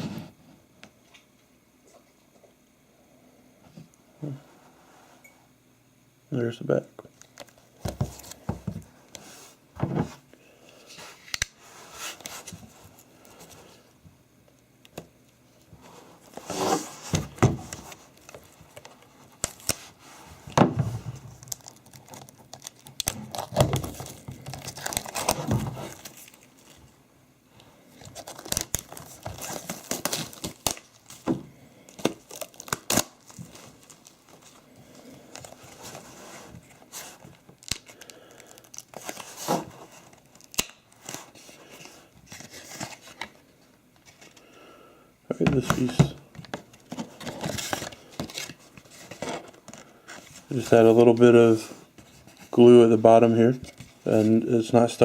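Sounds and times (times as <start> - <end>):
packaging tearing and crinkling: 16.6 - 20.0, 21.3 - 26.8, 28.0 - 31.2, 31.9 - 36.1, 36.9 - 41.5.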